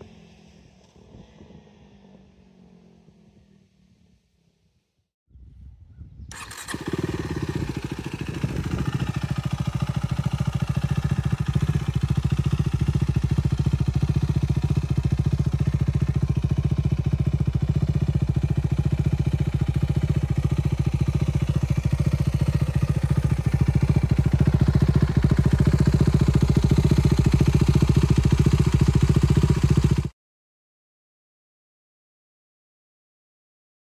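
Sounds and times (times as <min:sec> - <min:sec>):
motorcycle engine idling: 0:06.3 - 0:30.1.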